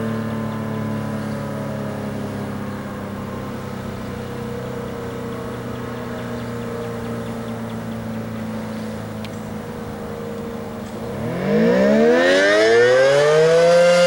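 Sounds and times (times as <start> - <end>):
electro-mechanical siren low tone: 0.0 - 14.0.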